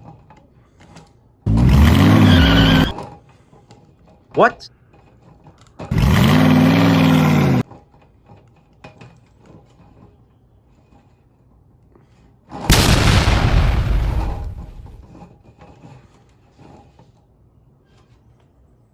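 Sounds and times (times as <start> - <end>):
engine revving: 1.5 - 3.0, 5.9 - 7.6
loud crash-like burst: 12.7 - 15.1.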